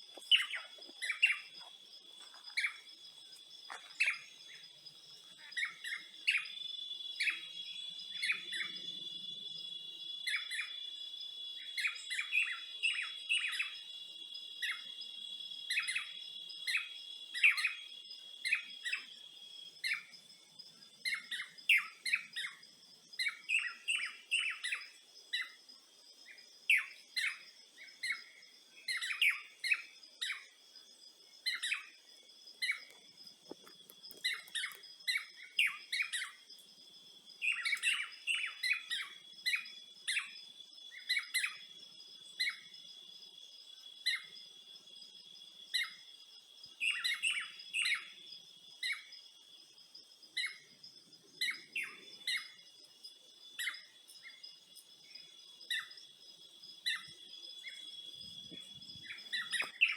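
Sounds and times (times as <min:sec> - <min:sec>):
birds chirping: 0:00.0 - 0:10.9, 0:31.3 - 0:36.6, 0:37.3 - 0:41.7, 0:50.4 - 0:59.9
insects droning: 0:00.0 - 0:59.9.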